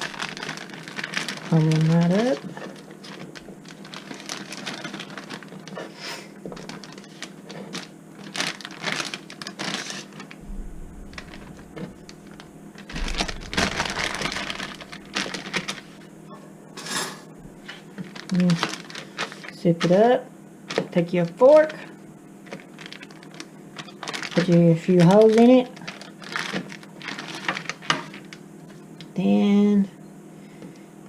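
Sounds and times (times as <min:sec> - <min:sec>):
plastic bag rustling and crinkling: 0:00.0 - 0:16.1, 0:17.5 - 0:19.6, 0:22.4 - 0:28.8.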